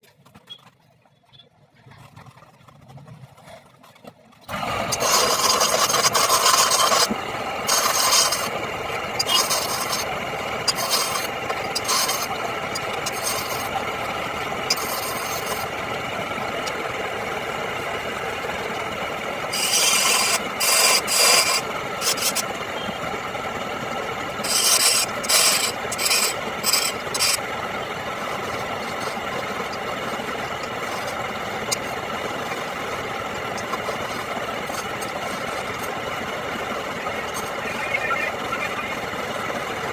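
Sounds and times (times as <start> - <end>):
wood lathe humming: 4.5 - 39.9
cutting tool rasping on wood: 4.8 - 13.9, 14.6 - 15.7, 19.5 - 22.5, 24.4 - 27.4, 28.1 - 36.0.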